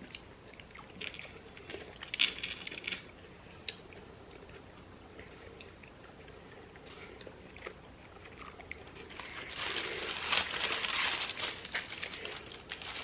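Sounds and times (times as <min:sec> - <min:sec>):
soft chewing: 0:00.0 - 0:13.0
packaging rustling: 0:09.1 - 0:13.0.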